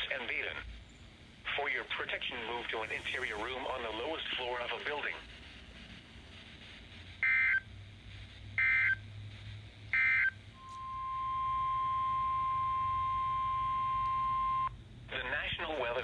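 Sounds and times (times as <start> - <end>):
steady single-pitch attention tone: 10.2 - 14.7.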